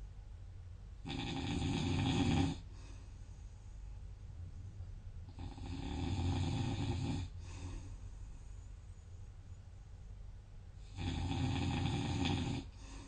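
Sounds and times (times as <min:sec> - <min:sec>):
person snoring: 0:01.0 - 0:02.8, 0:05.3 - 0:07.8, 0:10.8 - 0:13.0.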